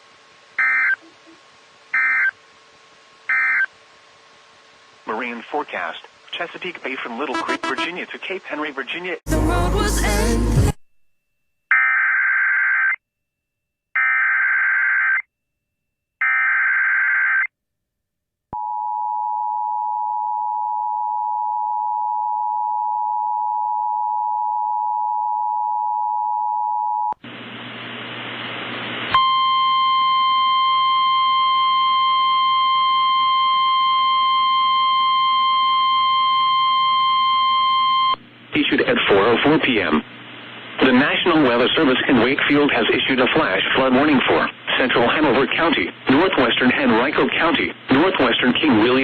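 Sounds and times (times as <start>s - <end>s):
single-pitch alert tone: 7.3s - 8.0s
two-tone attention signal: 7.3s - 8.0s.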